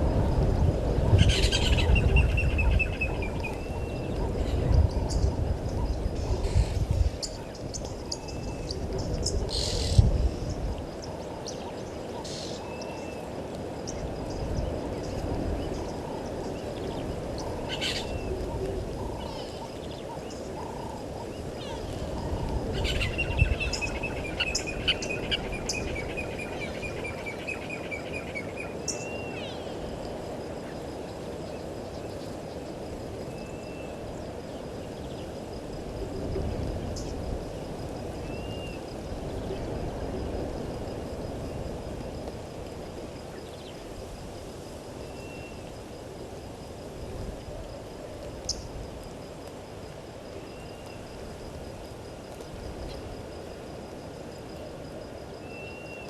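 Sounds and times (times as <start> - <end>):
wild birds calling: 0.6 - 35.4.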